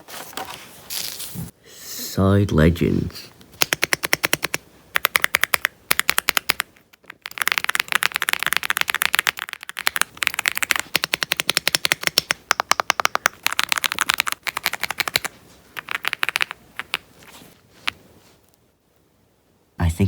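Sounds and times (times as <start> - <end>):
mechanical keyboard typing: 3.6 - 17.0.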